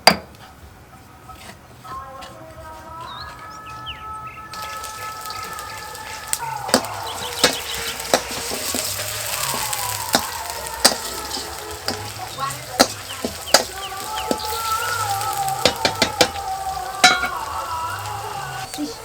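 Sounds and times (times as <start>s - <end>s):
food sizzling in hot oil: 4.5s - 19.0s
utensil knocking against pan: 6.7s - 14.6s.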